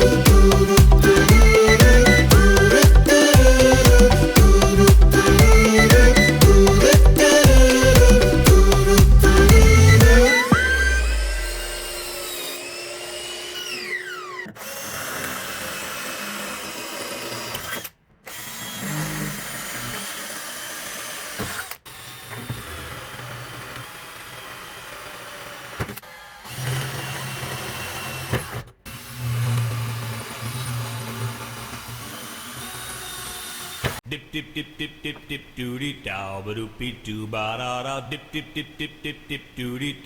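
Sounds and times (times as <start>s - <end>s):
motor winding down: 0.0s - 34.0s
power tool motors running: 0.0s - 34.0s.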